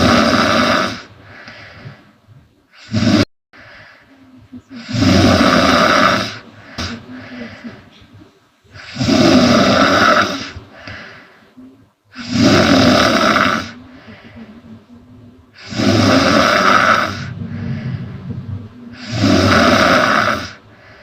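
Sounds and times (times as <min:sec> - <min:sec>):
woman snoring loudly: 0:00.0 - 0:01.1, 0:02.8 - 0:03.3, 0:04.7 - 0:07.0, 0:08.7 - 0:10.6, 0:12.1 - 0:14.0, 0:15.6 - 0:20.6
quiet breaths out: 0:00.9 - 0:03.0, 0:03.6 - 0:09.0, 0:09.9 - 0:12.5, 0:13.2 - 0:21.0.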